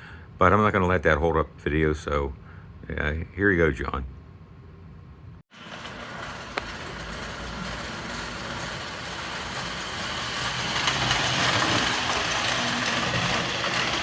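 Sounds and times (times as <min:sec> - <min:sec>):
wheels rolling on rails: 0:05.5 - 0:14.0
toy train motor whirring: 0:05.6 - 0:14.0.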